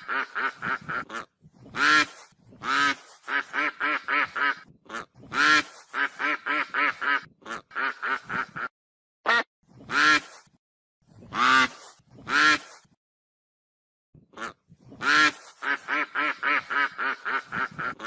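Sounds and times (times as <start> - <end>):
goose honking: 0.0 - 8.7, 14.4 - 18.0.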